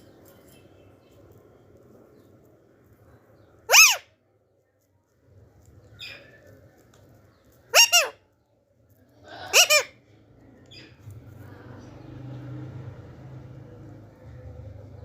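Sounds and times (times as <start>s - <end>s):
parakeet harsh calls: 3.7s - 4.1s, 7.7s - 8.2s, 9.3s - 10.0s.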